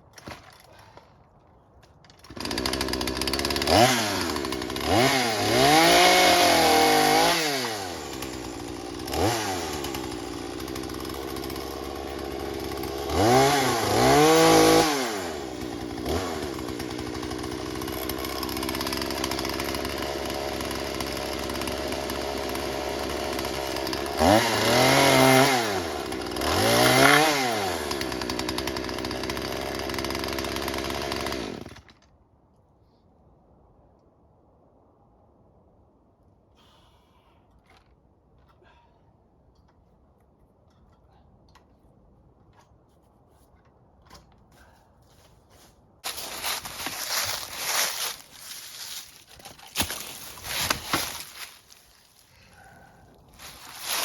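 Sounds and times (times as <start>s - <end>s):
chainsaw engine idling and revving: 2.2s - 31.9s, 46.0s - 54.0s.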